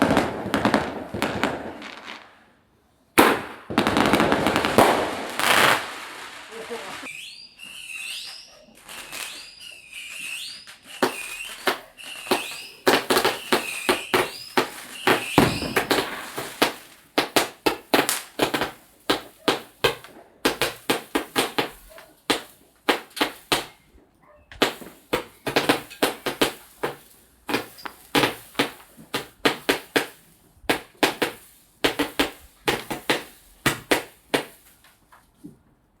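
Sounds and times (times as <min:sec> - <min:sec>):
fireworks bangs: 0:00.0 - 0:34.8
fireworks crackles: 0:00.0 - 0:35.3
fireworks whistles: 0:03.2 - 0:34.7.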